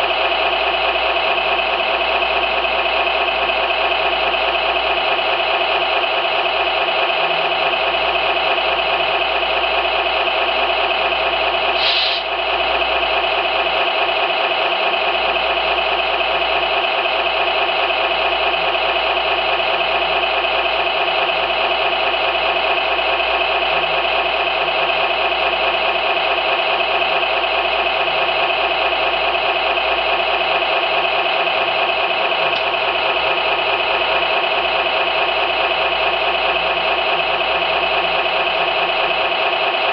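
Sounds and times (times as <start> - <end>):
simulated engine idling through speaker: 0.0 - 39.9
short high-pitched sound: 11.8 - 12.3.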